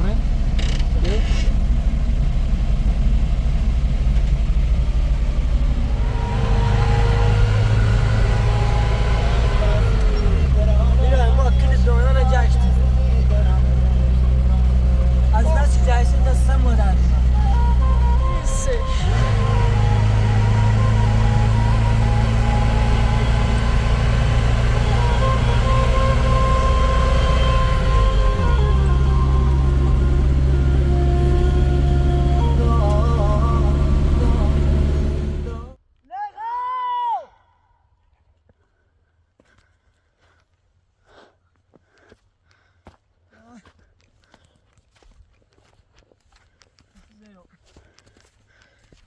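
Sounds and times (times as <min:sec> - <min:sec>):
vehicle engine rumbling: 0:00.0 - 0:35.8.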